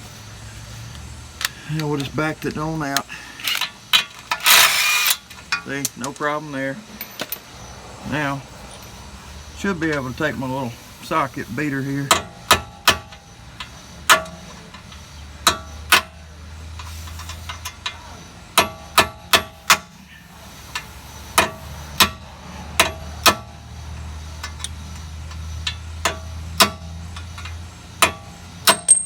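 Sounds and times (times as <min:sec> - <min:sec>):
hammer striking metal: 0:18.6 - 0:19.9, 0:26.0 - 0:29.0.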